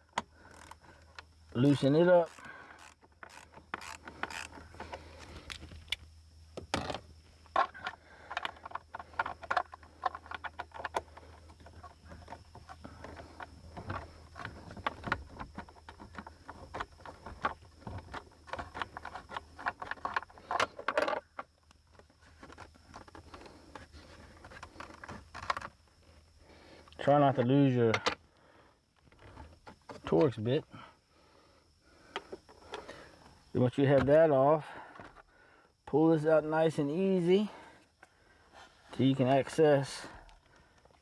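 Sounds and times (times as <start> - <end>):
ratchet clicking: 2.2 - 4.6.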